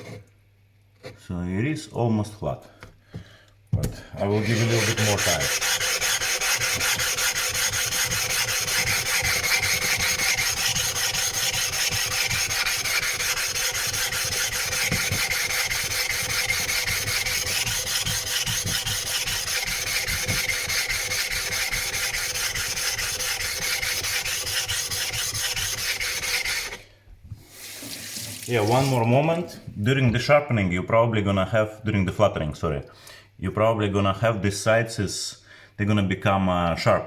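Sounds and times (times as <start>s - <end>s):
stone scraping on wet whetstone: 4.3s - 26.8s.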